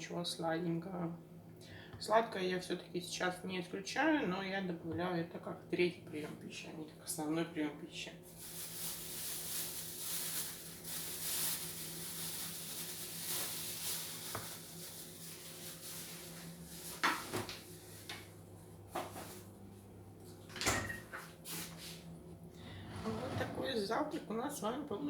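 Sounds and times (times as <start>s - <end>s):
steady low hum: 10.8s - 25.0s.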